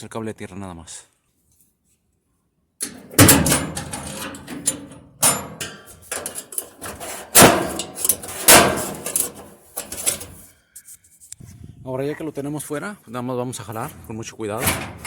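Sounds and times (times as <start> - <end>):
metal panels banging and rattling: 2.8 - 10.4, 13.8 - 15.0.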